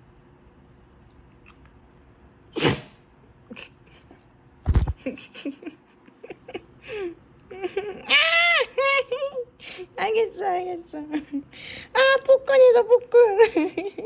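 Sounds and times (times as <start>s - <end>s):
puppy sneezing: 2.5s - 3.0s.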